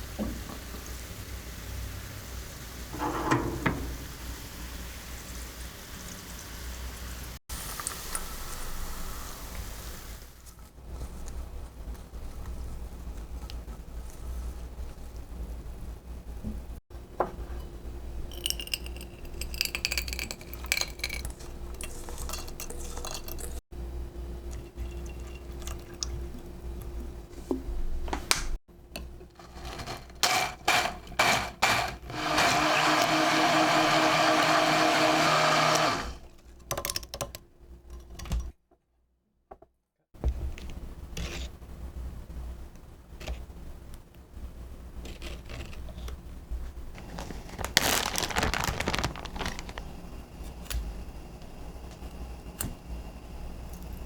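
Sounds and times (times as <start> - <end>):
blender motor running: 29.4 - 36.3.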